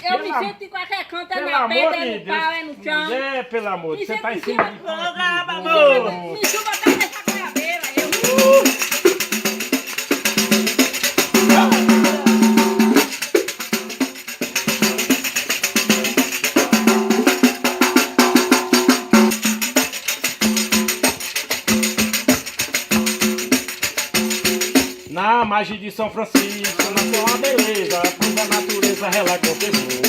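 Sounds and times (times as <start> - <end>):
pandeiro rhythm with rattling jingles: 5.7 - 30.0
pitched drum notes: 6.4 - 30.0.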